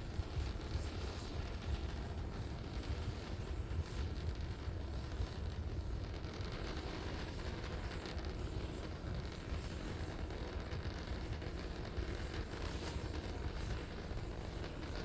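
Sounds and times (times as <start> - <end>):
deep rumble of rocket engines: 0.0 - 15.0.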